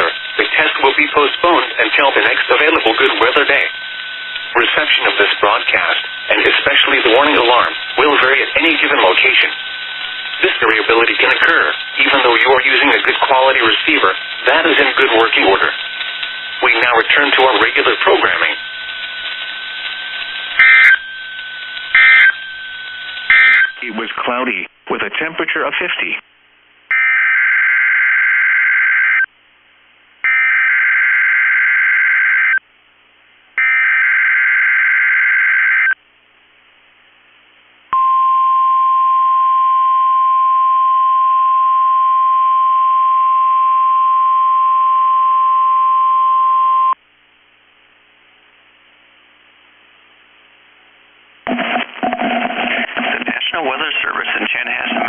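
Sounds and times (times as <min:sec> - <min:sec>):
steady alarm tone: 0:00.0 - 0:23.9, 0:30.2 - 0:32.6, 0:33.6 - 0:36.0
warbling data screech bursts: 0:00.0 - 0:24.0.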